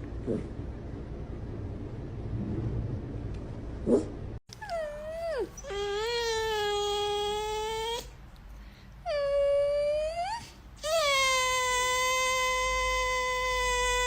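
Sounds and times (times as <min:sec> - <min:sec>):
low rumble: 0:00.0 - 0:05.4
pet animal wailing: 0:04.6 - 0:08.1, 0:09.1 - 0:14.0.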